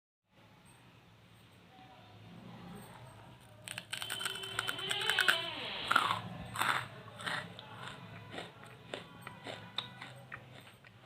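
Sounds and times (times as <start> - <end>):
person chewing charcoal: 3.4 - 11.0.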